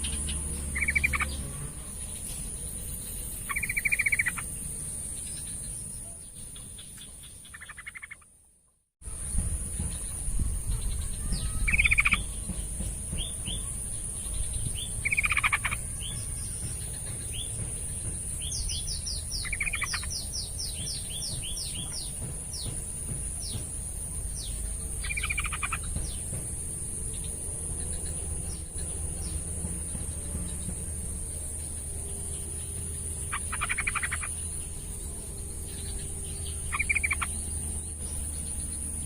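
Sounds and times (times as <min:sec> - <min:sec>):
bulbul bubbly chattering song: 0:33.3 - 0:34.3.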